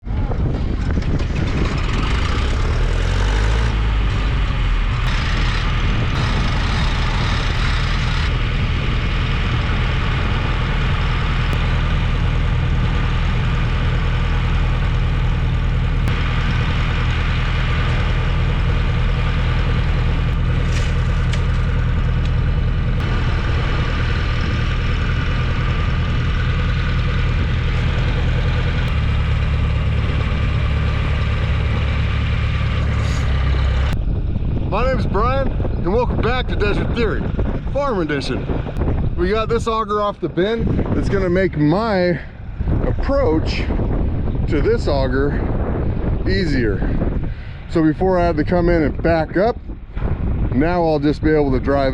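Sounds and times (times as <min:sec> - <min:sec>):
diesel engine idling: 0:00.0 - 0:51.9.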